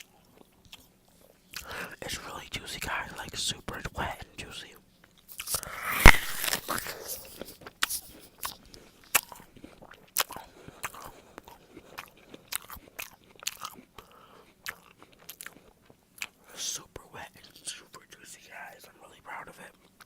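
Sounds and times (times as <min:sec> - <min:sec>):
crunchy chewing with wet clicks: 0:00.0 - 0:20.0
apple crunching bite: 0:05.3 - 0:16.4.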